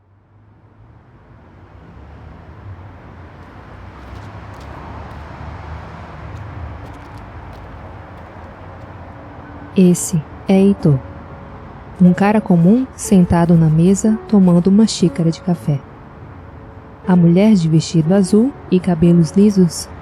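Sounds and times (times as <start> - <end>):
road traffic rumble: 0.0 - 20.0.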